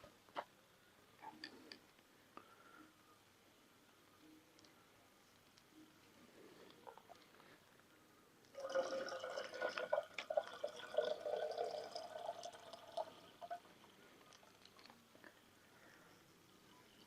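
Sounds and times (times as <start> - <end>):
liquid pouring into glass: 8.5 - 13.7.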